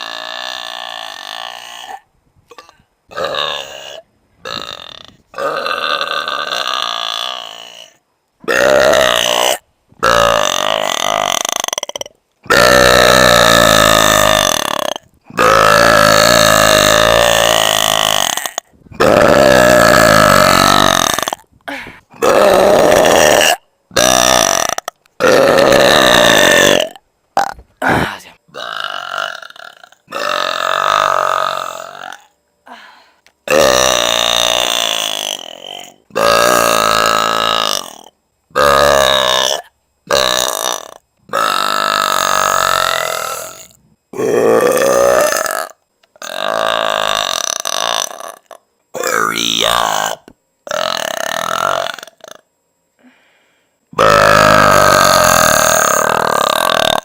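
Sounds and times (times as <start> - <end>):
woman belching: 0.0 - 32.8, 33.5 - 52.4, 54.0 - 57.0.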